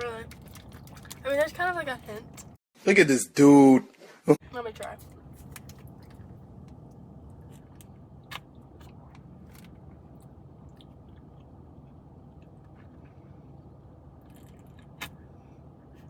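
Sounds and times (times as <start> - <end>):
steady low hum: 4.4 - 16.0.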